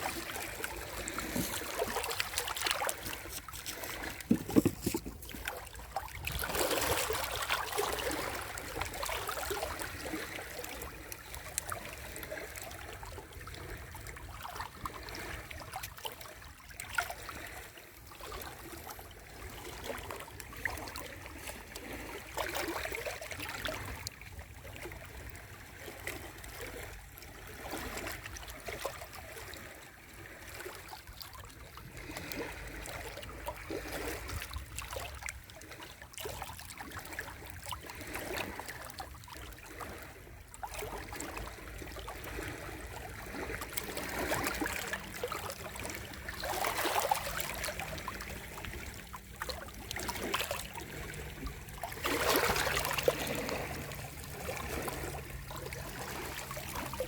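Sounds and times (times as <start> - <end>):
small waves lapping at shore: 0.0 - 57.0.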